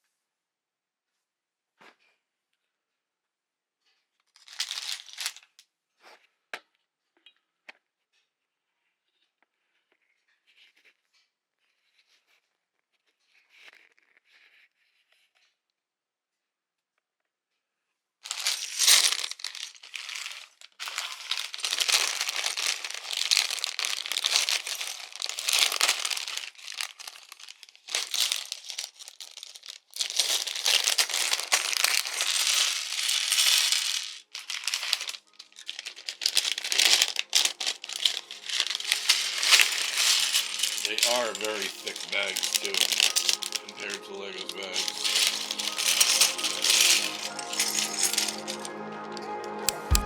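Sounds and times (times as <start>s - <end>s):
plastic bags crinkling: 4.4s - 5.4s, 18.3s - 50.0s.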